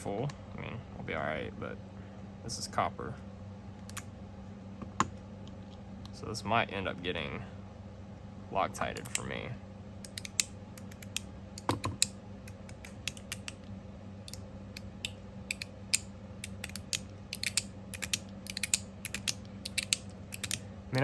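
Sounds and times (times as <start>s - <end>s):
fidget slider clicking: 10.0s - 13.6s, 14.3s - 20.6s.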